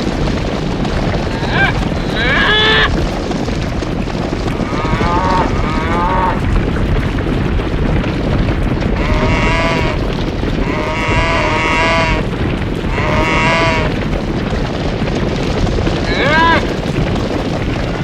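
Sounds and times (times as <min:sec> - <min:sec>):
rumble of cattle hooves: 0:00.0 - 0:18.0
cattle calling: 0:01.3 - 0:03.0, 0:04.6 - 0:06.4, 0:09.0 - 0:12.3, 0:12.9 - 0:14.0, 0:16.1 - 0:16.7.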